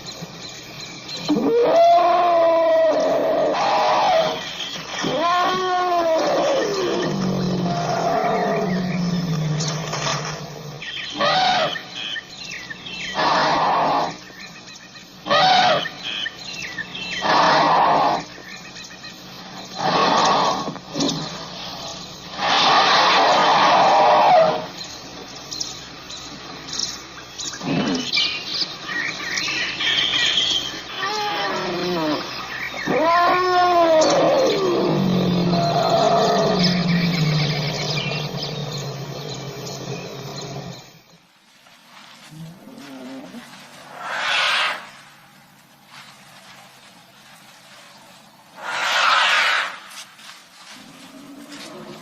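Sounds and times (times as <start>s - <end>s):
elephant calls: 1.2s - 12.3s, 13.0s - 14.3s, 15.2s - 18.7s, 19.5s - 25.2s, 27.6s - 41.1s, 42.2s - 45.3s, 48.5s - 50.0s
faint chirps: 33.8s - 52.0s.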